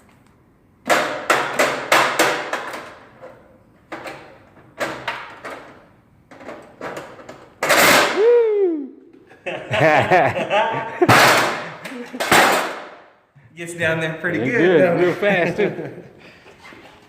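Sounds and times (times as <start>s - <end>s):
loud rising and falling call: 8.1s - 9.2s.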